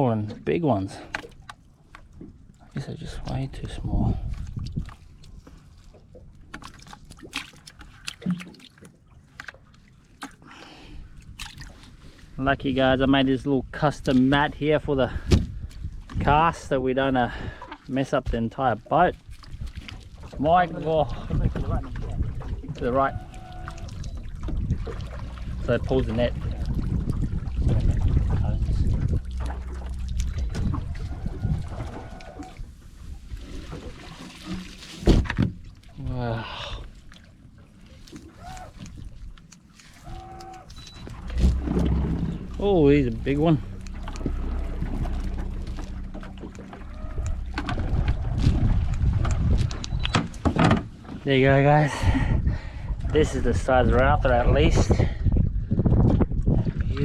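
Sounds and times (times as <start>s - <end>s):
water trickling: 18.6s - 50.5s
low steady hum: 23.1s - 36.0s, 38.4s - 51.1s.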